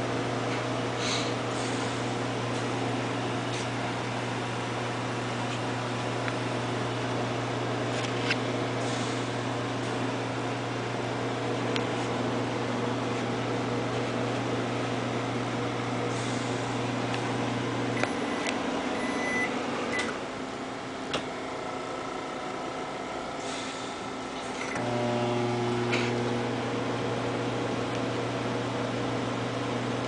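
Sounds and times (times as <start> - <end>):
microwave oven humming: 0.0 - 30.0
short high beep: 18.0 - 20.1.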